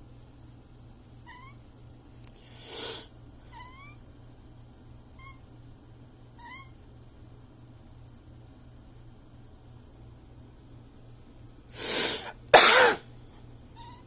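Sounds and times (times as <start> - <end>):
cat meowing: 1.2 - 1.6, 3.5 - 4.0, 6.4 - 6.8, 13.7 - 14.0.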